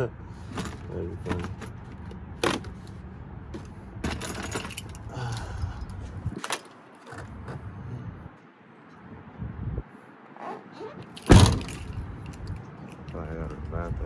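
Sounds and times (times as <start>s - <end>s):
items rummaged and shifted: 0.4s - 7.7s, 10.4s - 13.6s.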